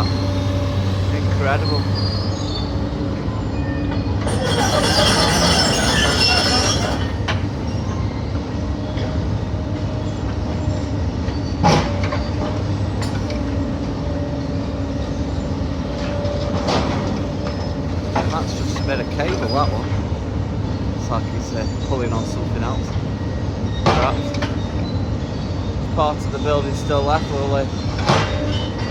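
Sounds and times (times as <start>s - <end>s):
metal on metal screeching scrape: 4.1s - 8.0s
machine engine running: 4.2s - 7.6s.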